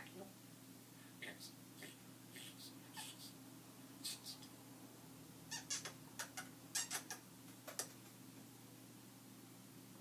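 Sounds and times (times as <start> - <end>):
parrot squeaks and clicks: 5.5 - 7.9.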